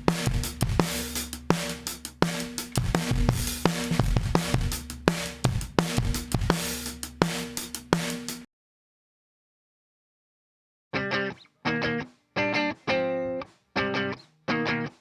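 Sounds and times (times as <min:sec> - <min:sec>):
drum kit beat: 0:00.0 - 0:08.5.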